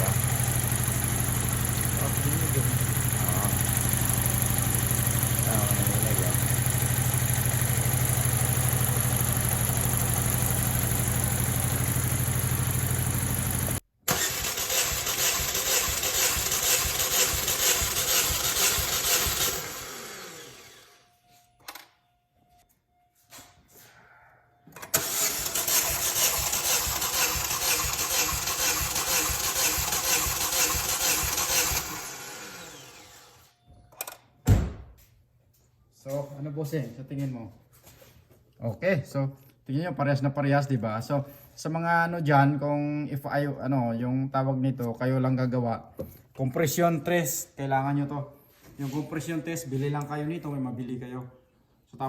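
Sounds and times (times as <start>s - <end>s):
car engine running rough: 0.0s - 20.6s, 25.0s - 32.5s
engine cranking on starter: 0.0s - 20.9s, 24.8s - 33.4s.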